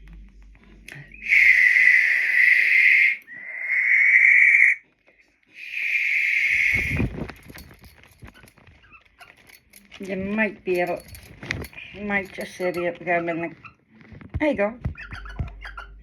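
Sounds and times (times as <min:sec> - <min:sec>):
barn owl screeching: 0:01.0 - 0:04.8, 0:05.6 - 0:07.3.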